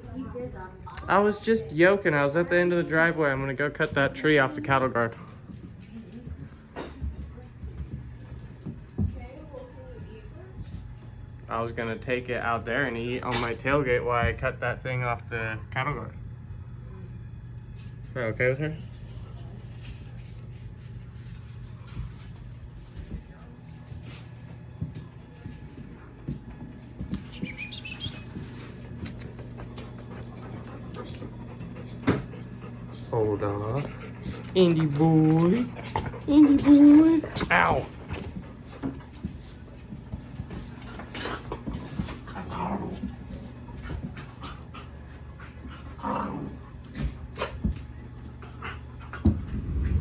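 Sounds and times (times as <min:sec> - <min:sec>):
steady low hum: 0:00.0 - 0:50.0
dog panting: 0:25.8 - 0:50.0
dog whining: 0:27.3 - 0:28.8, 0:34.0 - 0:38.0.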